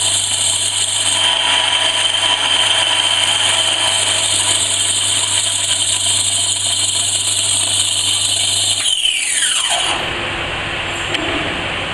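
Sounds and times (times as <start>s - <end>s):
grinder motor whining: 0.0s - 10.0s
steady background noise: 9.9s - 11.9s.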